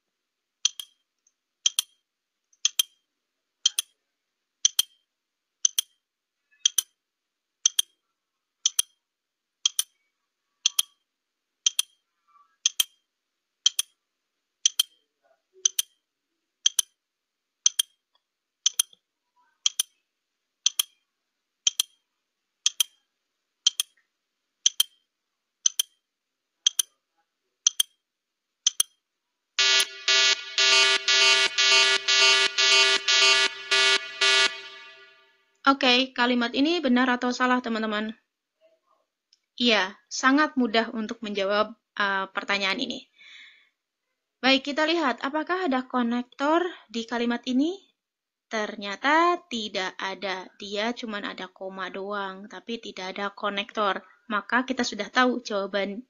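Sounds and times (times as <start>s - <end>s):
clock ticking: 0.6s - 1.0s, 1.6s - 2.0s, 2.6s - 3.0s, 3.6s - 3.9s, 4.6s - 5.0s, 5.6s - 6.0s, 6.6s - 7.0s, 7.6s - 8.0s, 8.6s - 9.0s, 9.6s - 9.9s, 10.6s - 11.0s, 11.7s - 12.0s, 12.6s - 13.0s, 13.6s - 14.0s, 14.6s - 15.0s, 15.6s - 16.0s, 16.6s - 17.0s, 17.6s - 18.0s, 18.7s - 19.0s, 19.6s - 19.9s, 20.7s - 21.0s, 21.7s - 22.0s, 22.7s - 23.0s, 23.7s - 24.0s, 24.6s - 25.0s, 25.7s - 26.0s, 26.7s - 27.0s, 27.7s - 28.0s, 28.7s - 29.0s.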